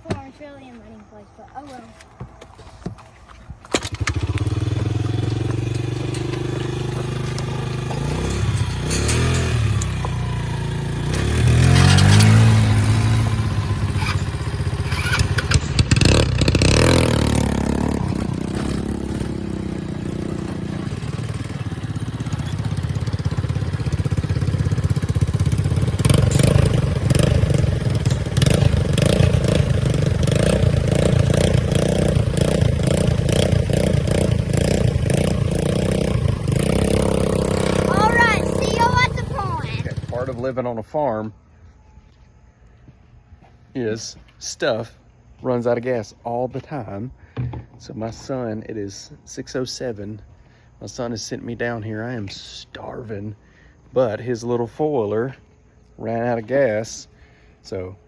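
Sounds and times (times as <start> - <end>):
clattering and rattling over bumps: 1.6 - 40.3
small vehicle engine running: 3.7 - 40.5.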